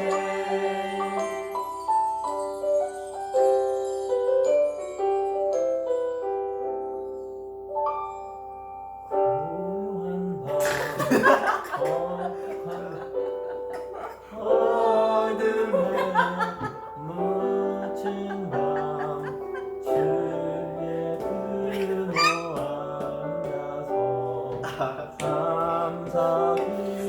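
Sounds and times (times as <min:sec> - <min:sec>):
voices singing carols: 0:00.0 - 0:02.3, 0:09.4 - 0:27.0
recorded backing track: 0:00.0 - 0:27.0.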